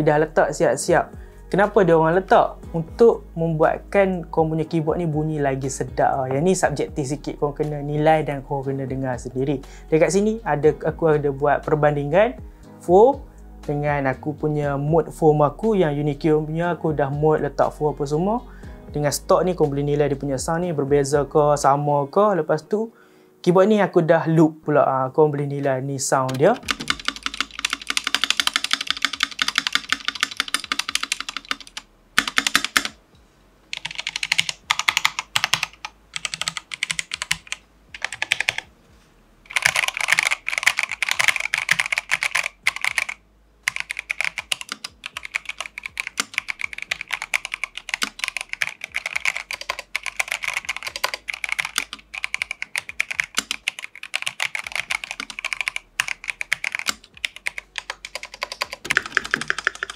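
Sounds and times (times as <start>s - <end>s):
mechanical keyboard typing: 26.3s - 33.0s, 33.7s - 38.7s, 39.5s - 59.9s.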